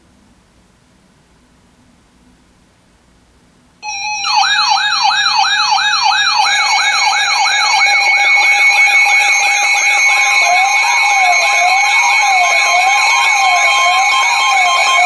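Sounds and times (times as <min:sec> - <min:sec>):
electronic siren yelping: 0:03.8 - 0:15.0
steady high tones: 0:03.8 - 0:15.0.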